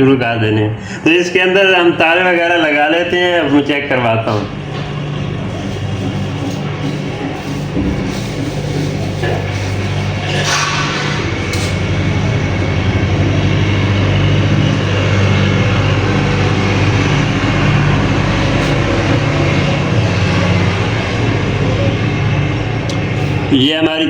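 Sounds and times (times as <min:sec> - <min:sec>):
low electrical hum: 0:00.0 - 0:24.0
short clatter: 0:04.3 - 0:15.0.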